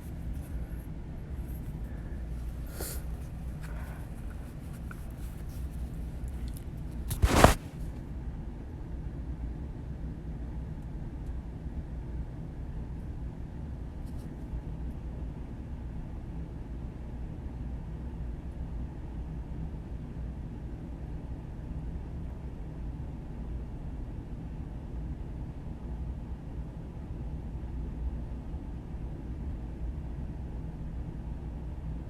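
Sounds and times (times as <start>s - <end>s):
microphone rub: 1.4s - 7.9s.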